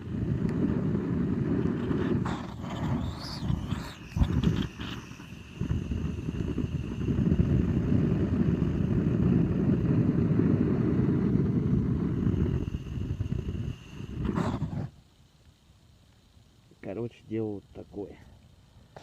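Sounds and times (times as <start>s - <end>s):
gas flame jet rumbling: 0.0s - 19.0s.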